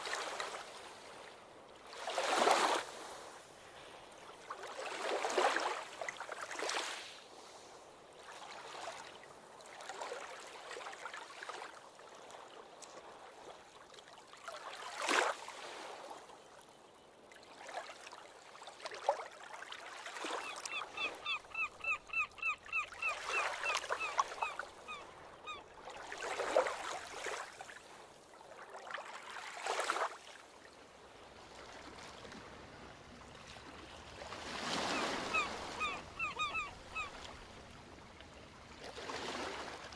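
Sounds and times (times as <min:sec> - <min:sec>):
bird calling: 0:20.3 - 0:25.6, 0:34.5 - 0:37.4.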